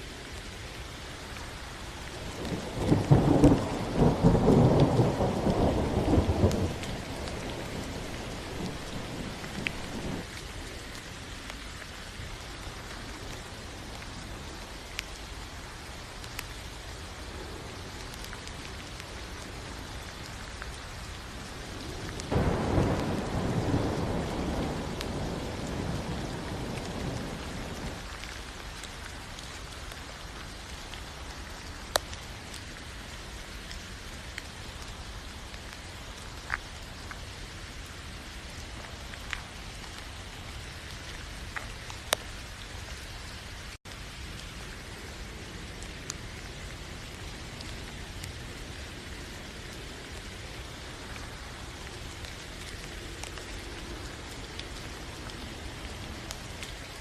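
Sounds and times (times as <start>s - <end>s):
rain falling: 0.0s - 57.0s
low thunder rumble: 2.2s - 10.3s, 22.2s - 28.1s.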